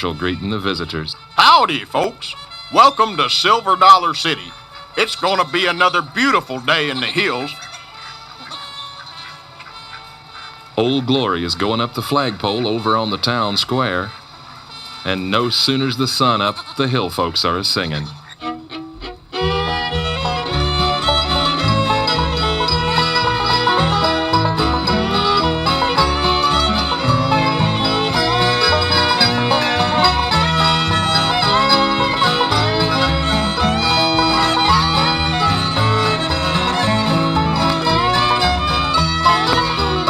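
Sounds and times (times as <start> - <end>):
guitar: 0.0 - 8.9, 17.8 - 40.0
banjo: 0.0 - 16.6, 17.4 - 40.0
fiddle: 0.0 - 40.0
bass line: 19.0 - 40.0.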